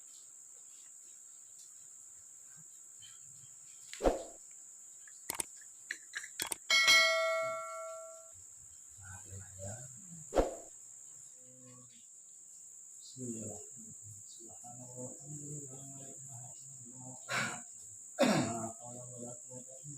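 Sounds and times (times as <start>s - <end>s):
crickets chirring: 0.0s - 19.9s
light clicks: 5.0s - 6.7s
bell-like ring: 6.7s - 8.3s.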